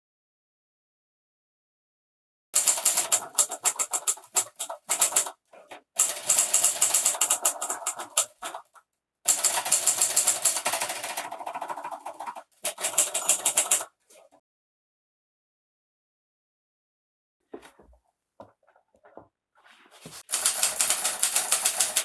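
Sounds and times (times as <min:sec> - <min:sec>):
typewriter key clatter: 0:02.6 - 0:05.3, 0:06.0 - 0:08.3, 0:09.3 - 0:11.4, 0:12.6 - 0:13.9, 0:20.2 - 0:22.0.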